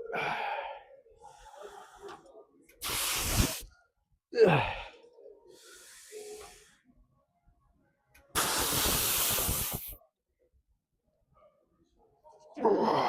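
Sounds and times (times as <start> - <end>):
man grunting: 4.4 - 4.9, 12.6 - 13.0.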